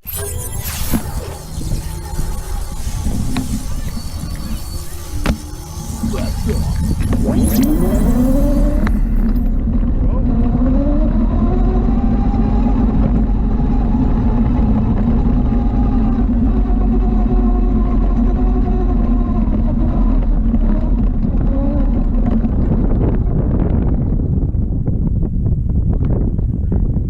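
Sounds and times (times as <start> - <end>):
atv engine running: 9.3 - 25.4.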